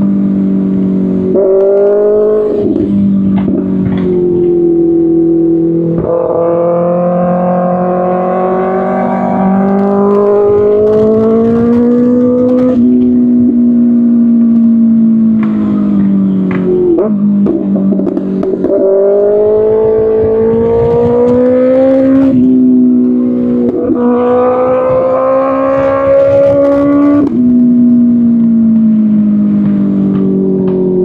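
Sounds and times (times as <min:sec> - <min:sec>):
motorcycle engine with gear changes: 0:00.0 - 0:31.0.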